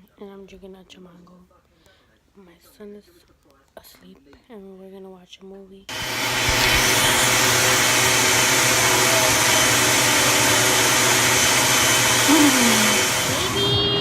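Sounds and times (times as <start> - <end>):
small electric motor running: 5.9 - 14.0.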